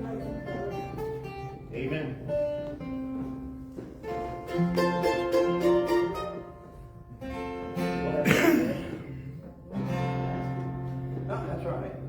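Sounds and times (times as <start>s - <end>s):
acoustic guitar picking: 0.0s - 11.4s.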